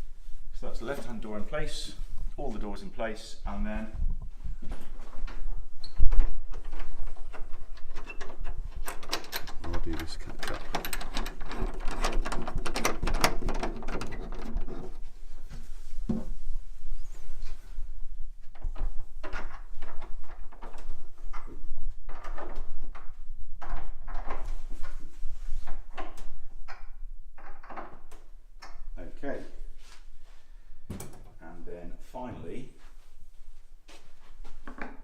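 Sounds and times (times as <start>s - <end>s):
wooden wardrobe knocks and clicks: 30.9s - 31.4s.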